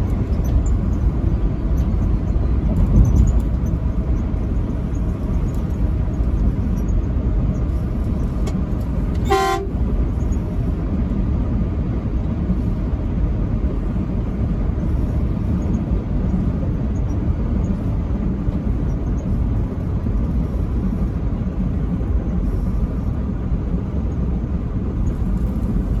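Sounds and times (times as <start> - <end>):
truck road and engine rumble: 0.0 - 26.0
truck horn toot: 9.2 - 9.9.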